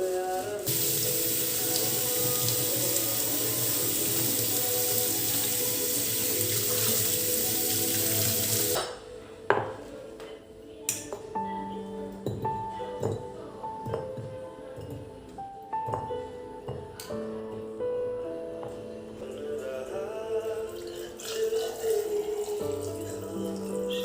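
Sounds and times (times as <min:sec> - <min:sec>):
tap water running into sink: 0:00.6 - 0:08.9.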